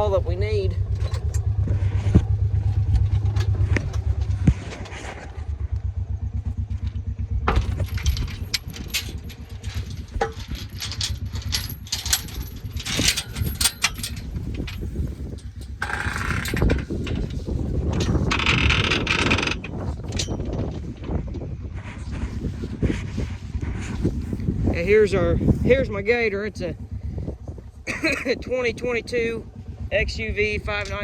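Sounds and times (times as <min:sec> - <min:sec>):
rattling bursts: 0:00.0 - 0:31.0
utility vehicle engine idling: 0:00.0 - 0:31.0
metallic clicks and knocks: 0:00.9 - 0:02.3, 0:06.9 - 0:21.2.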